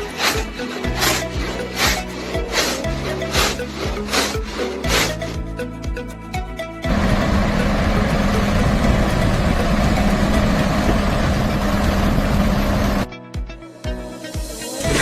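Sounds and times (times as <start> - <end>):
machine running with low hum: 6.9 - 13.1.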